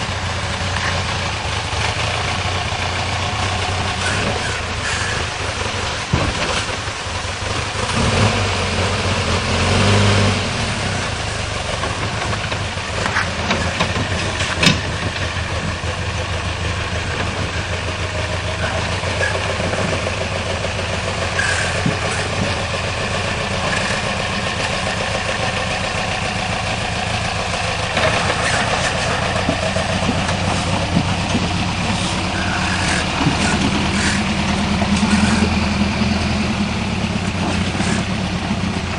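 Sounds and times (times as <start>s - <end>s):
vehicle engine idling low: 0.0s - 38.9s.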